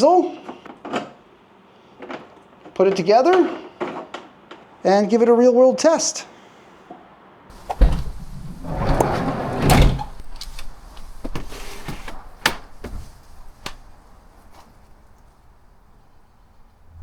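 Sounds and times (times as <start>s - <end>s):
sharp knocks and clunks: 7.5s - 16.7s
scraping and rustling: 7.5s - 16.8s.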